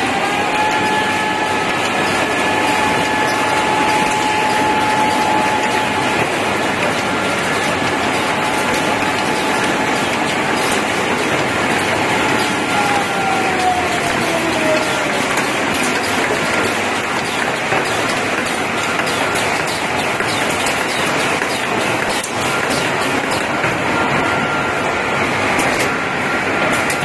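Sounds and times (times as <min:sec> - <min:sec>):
machine mechanical rattle: 0:01.6 - 0:12.7, 0:13.5 - 0:23.8.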